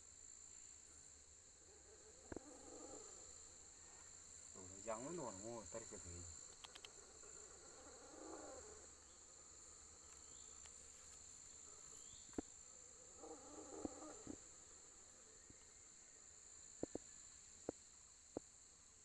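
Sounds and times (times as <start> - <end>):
insects chirring: 0.0 - 19.0
small clicks: 6.5 - 7.0.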